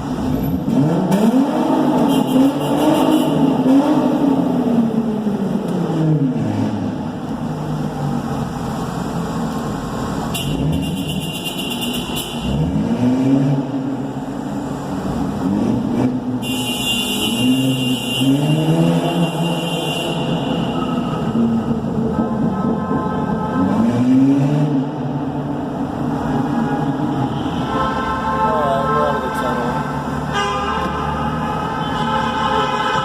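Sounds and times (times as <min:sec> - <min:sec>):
car engine revving: 0:00.0 - 0:09.2, 0:12.1 - 0:16.5, 0:17.2 - 0:27.8.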